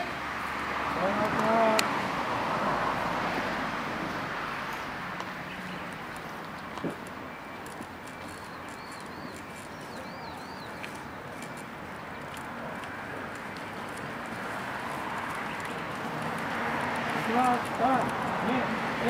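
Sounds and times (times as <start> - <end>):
small bird chirping: 7.3 - 12.2.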